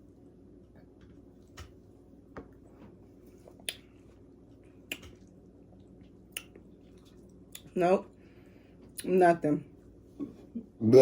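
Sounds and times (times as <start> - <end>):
low room hum: 0.0 - 11.0
lip smacks and tongue clicks: 3.4 - 3.9, 4.6 - 7.7.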